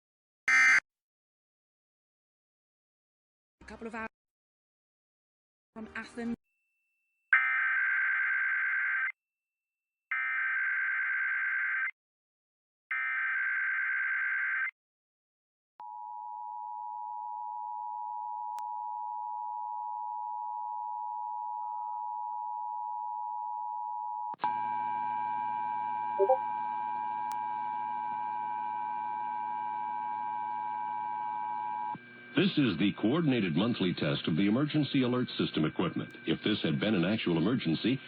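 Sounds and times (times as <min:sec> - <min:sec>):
two-tone attention signal: 0:26.2 - 0:26.4.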